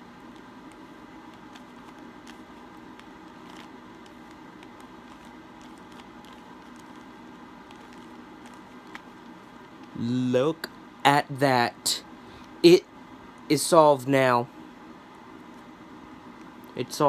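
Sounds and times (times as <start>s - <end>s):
low room hum: 0.0s - 17.0s
puzzle cube clicking: 0.4s - 9.2s.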